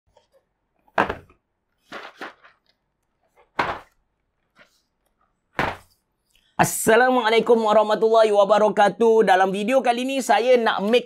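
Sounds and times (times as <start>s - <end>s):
knocks or thuds: 1.0s - 1.4s, 3.6s - 3.9s, 5.6s - 5.9s.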